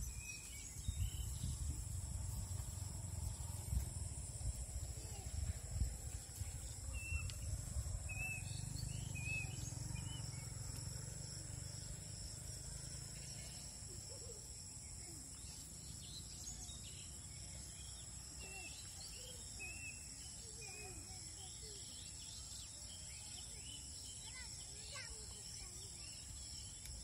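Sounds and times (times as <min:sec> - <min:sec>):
insects calling: 0:00.0 - 0:27.0
bird chirps: 0:06.3 - 0:10.7.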